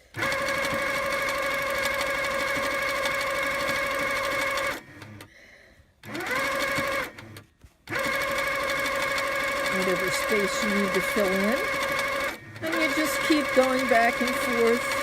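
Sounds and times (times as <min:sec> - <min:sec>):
quilting machine stitching: 0:00.0 - 0:05.3, 0:06.0 - 0:15.0.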